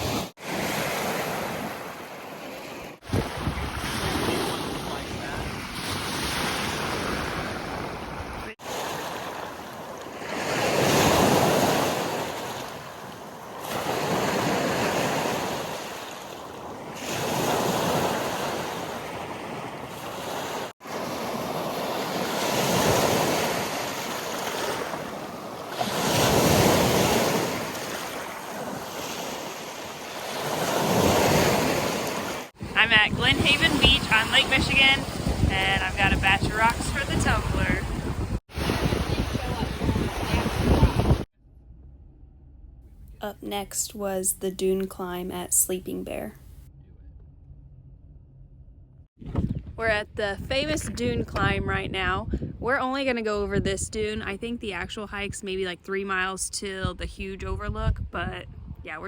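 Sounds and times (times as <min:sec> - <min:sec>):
waves washing onto beach: 0:00.0 - 0:41.3
wind buffeting microphone: 0:03.0 - 0:05.8, 0:32.6 - 0:41.3, 0:49.2 - 0:55.4, 0:56.8 - 0:59.0.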